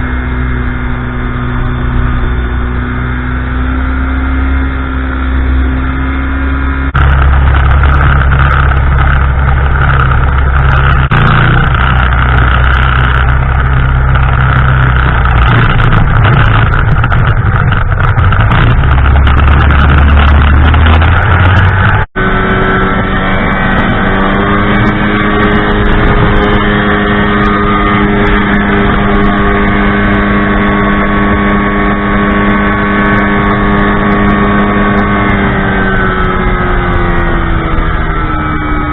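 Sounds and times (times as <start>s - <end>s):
ultralight aircraft engine and propeller: 0.0s - 38.9s.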